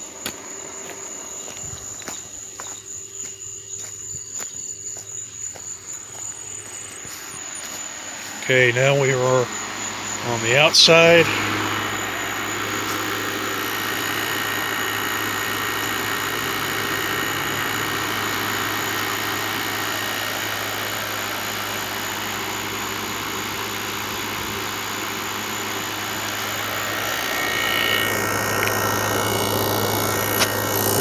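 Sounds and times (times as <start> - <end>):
air conditioner hum: 0.0 - 31.0
fan whooshing: 6.5 - 31.0.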